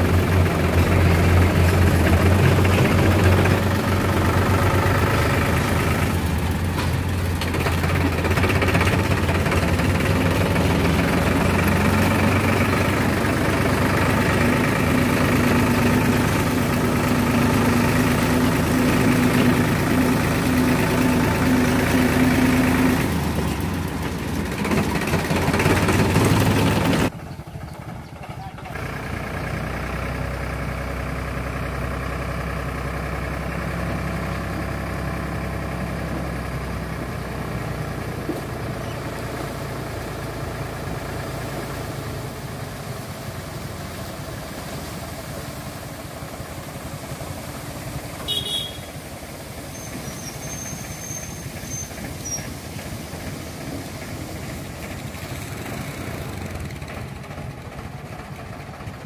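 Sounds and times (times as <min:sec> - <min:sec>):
diesel engine of heavy machinery: 0:00.0 - 0:59.0
brief high squeal: 0:49.7 - 0:52.5.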